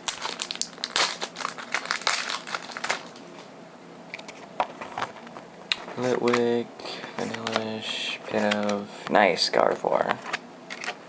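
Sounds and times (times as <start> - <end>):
foil wrapper crinkling: 0.0 - 3.2.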